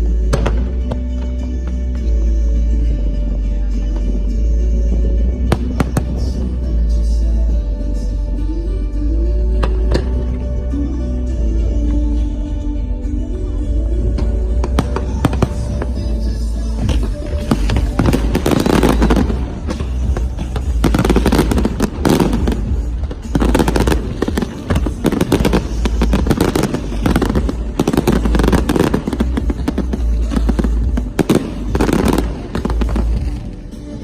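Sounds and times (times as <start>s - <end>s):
fireworks crackling and popping: 14.2s - 34.0s.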